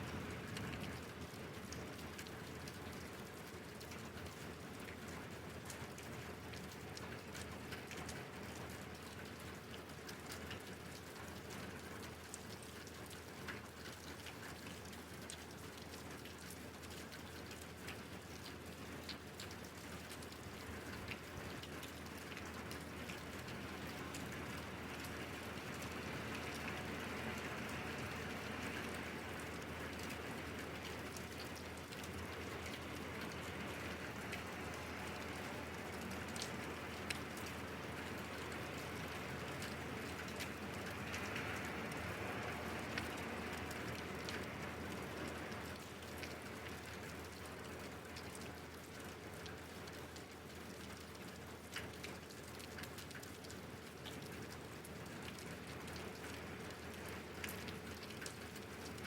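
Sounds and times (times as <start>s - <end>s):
raindrop ticks: 0.0s - 59.0s
steady rain falling: 0.0s - 59.0s.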